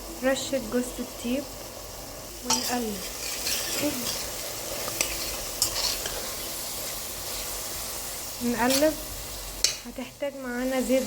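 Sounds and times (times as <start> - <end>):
onion sizzling in oil: 0.0 - 11.0
spoon stirring and scraping: 2.4 - 9.0.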